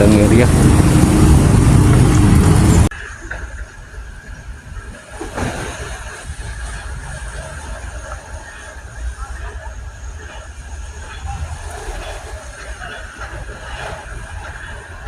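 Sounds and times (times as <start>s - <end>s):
loud vehicle rumble: 0.0s - 2.9s.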